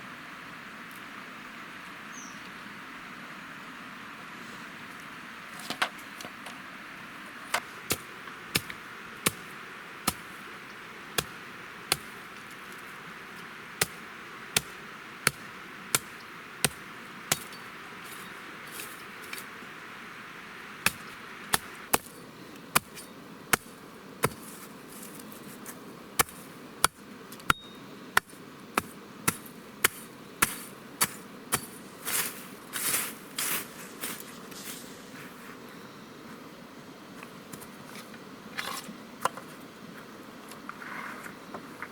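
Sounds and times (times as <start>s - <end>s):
stream rushing: 6.6s - 34.8s
chopping blows on wood: 11.2s - 12.2s.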